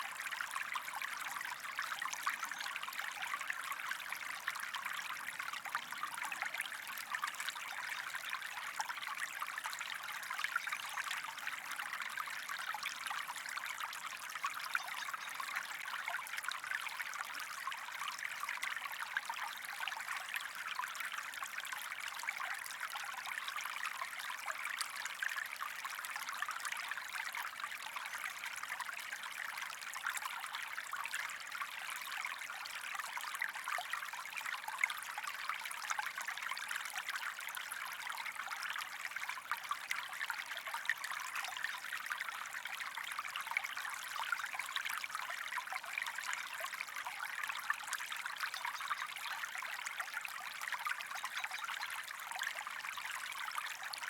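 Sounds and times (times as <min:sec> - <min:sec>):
stream running: 0:00.0 - 0:54.0.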